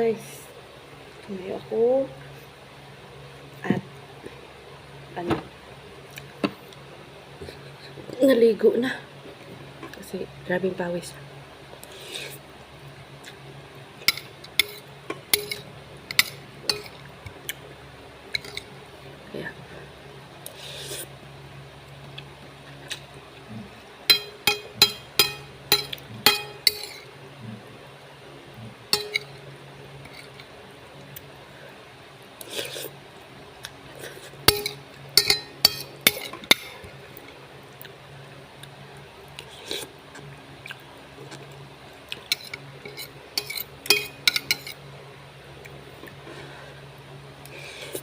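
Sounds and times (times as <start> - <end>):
steady low hum: 0.0 - 48.0
spoon tapping a bowl: 15.4 - 17.0, 24.1 - 27.0, 29.0 - 29.3, 34.5 - 36.6, 43.9 - 44.4.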